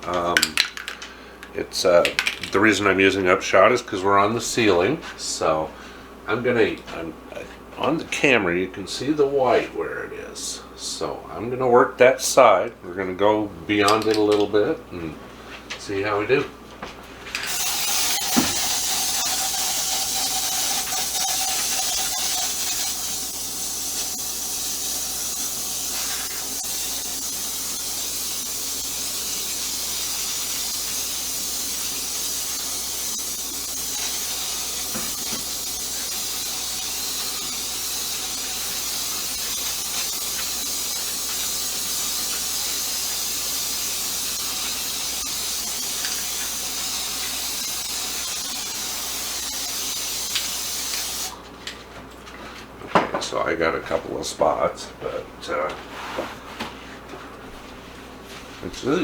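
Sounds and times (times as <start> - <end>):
aerosol can spraying hiss: 17.5 - 51.4.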